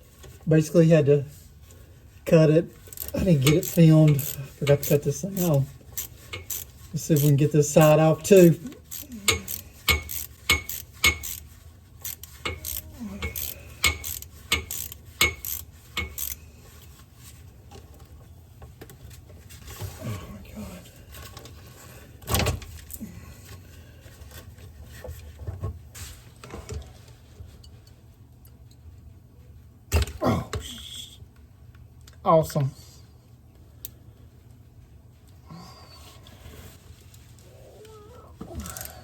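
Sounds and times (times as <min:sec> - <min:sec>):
hand tools clinking on metal: 0:02.9 - 0:11.5, 0:12.1 - 0:16.4.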